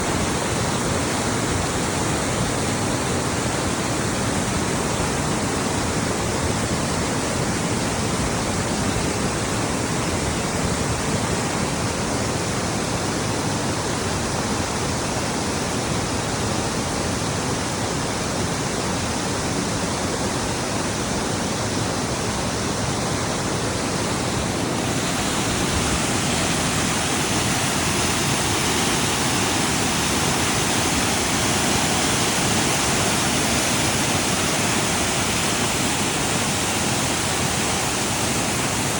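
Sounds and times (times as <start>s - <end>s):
waterfall roaring: 17.0s - 38.9s.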